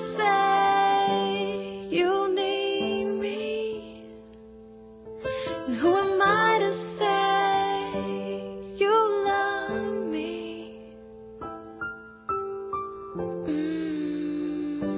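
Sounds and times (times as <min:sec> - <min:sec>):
woman singing ballad: 0:00.0 - 0:04.2, 0:05.3 - 0:11.0, 0:13.3 - 0:14.9
piano: 0:00.0 - 0:14.9.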